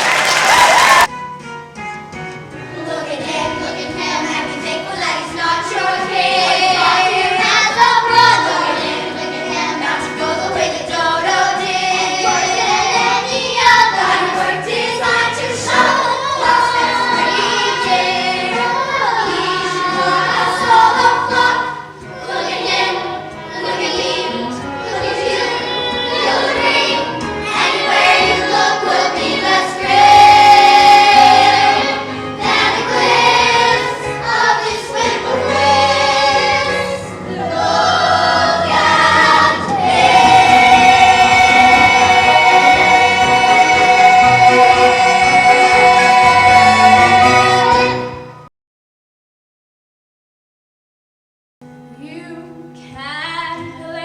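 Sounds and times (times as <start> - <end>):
musical accompaniment: 0.0 - 48.5
chorus singing show tune: 2.7 - 48.4.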